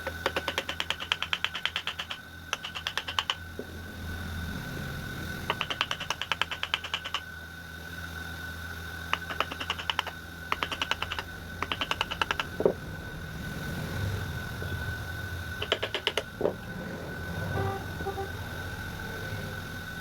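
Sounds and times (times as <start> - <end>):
tapping on wood carving tools: 0.0 - 3.4, 5.5 - 7.2, 9.1 - 12.8, 15.6 - 16.6
faint steady whine: 0.0 - 20.0
low hum: 10.2 - 20.0.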